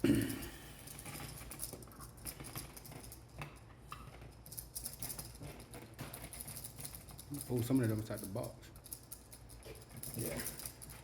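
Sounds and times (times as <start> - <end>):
wires rustling: 0.8 - 11.0.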